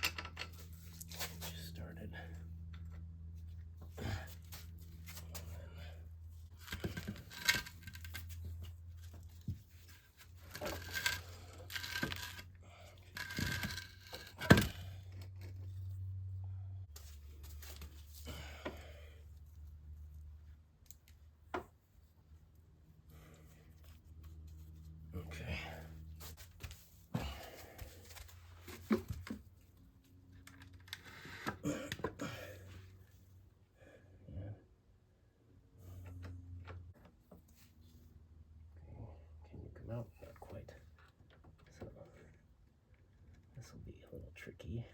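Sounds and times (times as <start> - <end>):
clatter of hand tools and metal: 0.0 - 1.6, 6.5 - 15.4
rustling and scraping: 0.0 - 1.8, 2.6 - 16.2, 16.8 - 31.6
low steady hum: 0.0 - 44.9.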